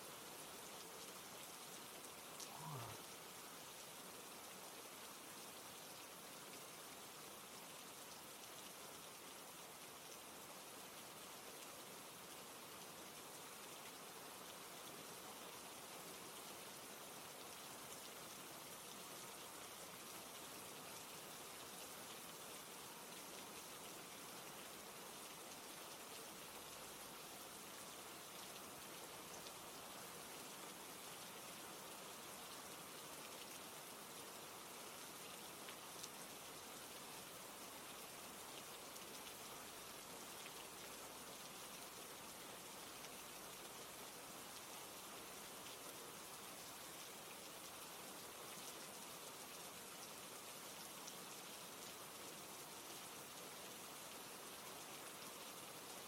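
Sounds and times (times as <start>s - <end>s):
faint steady rainfall: 0.0s - 56.0s
rain hissing: 1.8s - 3.3s
raindrop ticks: 2.3s - 3.1s.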